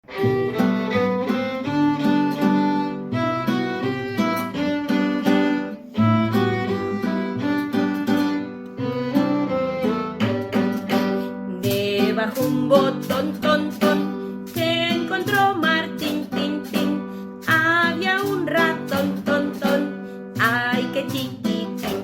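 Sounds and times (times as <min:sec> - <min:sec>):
instrumental music melody: 0:00.0 - 0:22.0.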